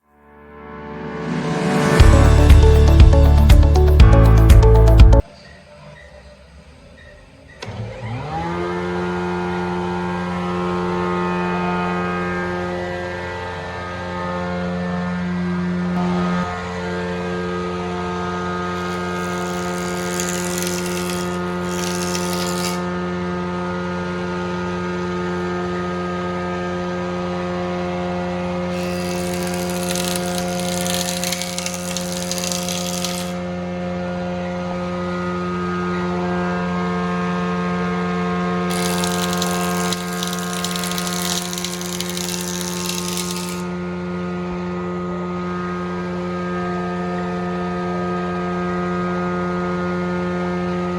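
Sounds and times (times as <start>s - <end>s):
planer humming: 18.2s - 22.9s, 28.6s - 33.5s, 38.6s - 43.8s
planer cutting wood with hiss: 18.3s - 23.0s, 28.6s - 33.6s, 38.6s - 43.8s.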